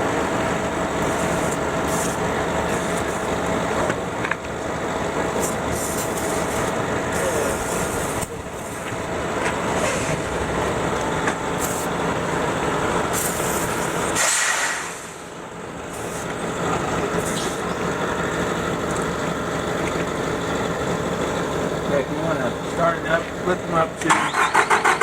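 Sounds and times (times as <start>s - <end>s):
forklift engine running: 0.0s - 14.2s, 14.9s - 25.0s
short hiss: 14.2s - 15.2s.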